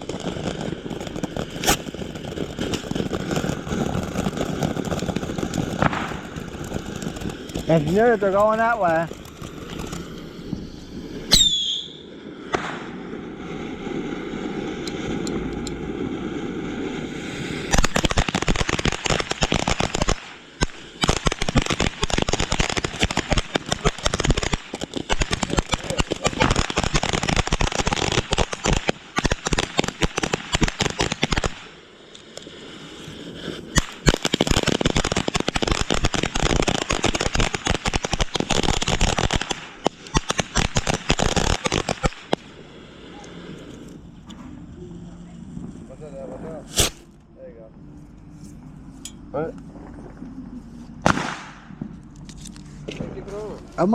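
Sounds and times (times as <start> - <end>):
firework rapid crackling pops: 0.0 - 44.4, 46.6 - 47.2, 51.0 - 52.3
firework hissing: 0.0 - 47.2
firework falling whistle: 1.0 - 7.6, 9.2 - 13.0.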